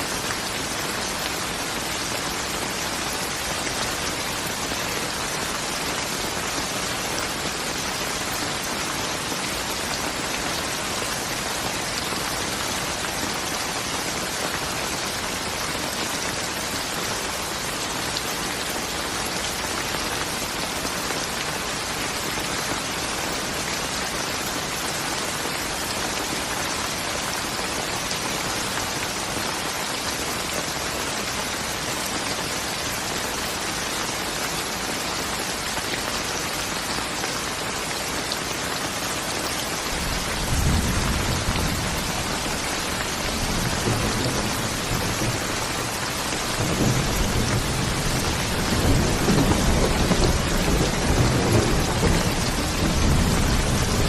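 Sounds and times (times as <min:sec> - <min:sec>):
steady rain hissing: 0:00.0 - 0:54.0
thunder rumbling: 0:40.0 - 0:54.0.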